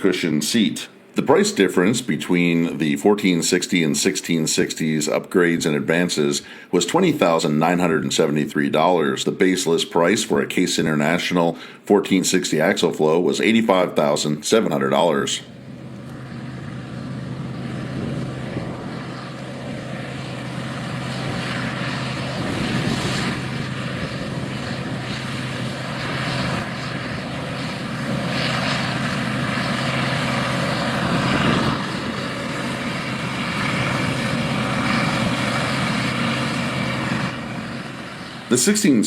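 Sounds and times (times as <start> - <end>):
combine harvester engine drone: 11.5 - 39.0.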